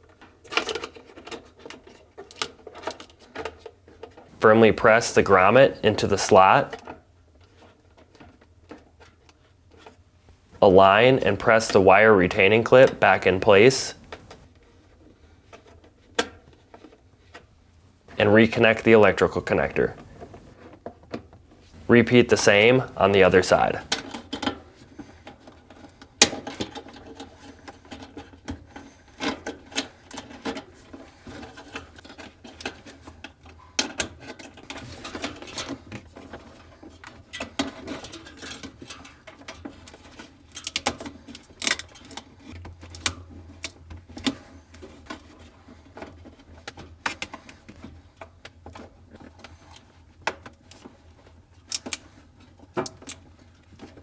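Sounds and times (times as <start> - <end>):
plastic parts clicking and tapping: 0.1 - 4.3, 25.2 - 54.0.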